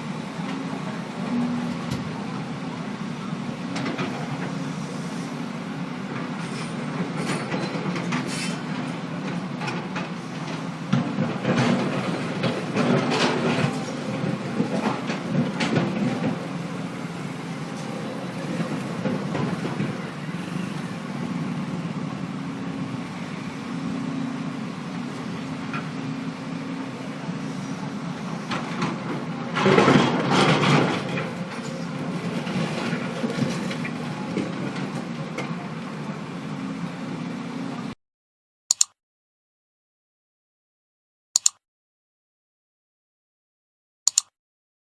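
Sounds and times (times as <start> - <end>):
heavy diesel machinery running: 0.0 - 38.0
rough clattering noise: 28.2 - 35.6
short click: 38.7 - 39.0, 41.4 - 41.6, 44.1 - 44.3.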